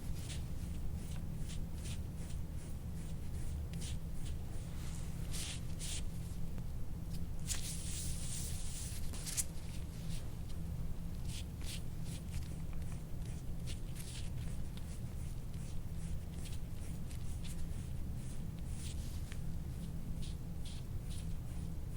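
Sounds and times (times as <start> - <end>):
steady low hum: 0.0 - 21.9.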